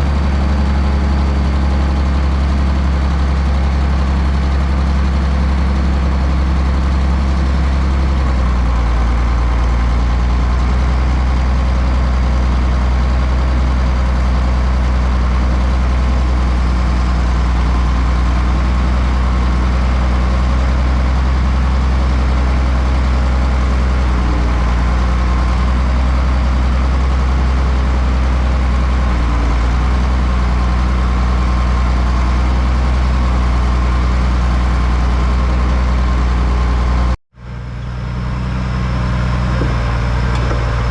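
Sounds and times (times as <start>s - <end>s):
heavy engine humming: 0.0s - 40.9s.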